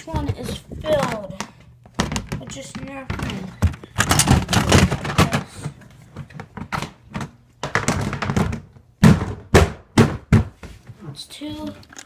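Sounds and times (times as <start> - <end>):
boxes rustling and clattering: 0.0 - 9.6
box thunks: 7.6 - 10.6.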